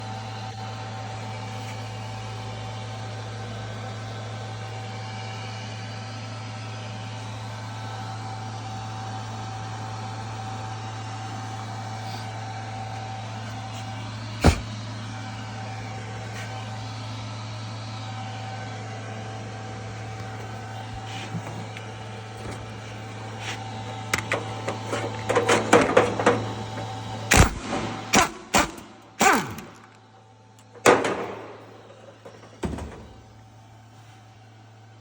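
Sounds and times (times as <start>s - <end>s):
low mechanical hum: 0.0s - 35.0s.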